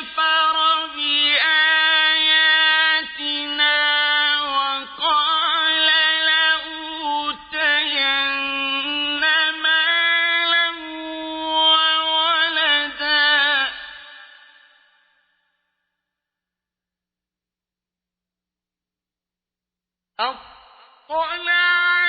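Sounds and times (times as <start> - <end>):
man chanting recitation: 0.0 - 13.8, 21.1 - 22.0.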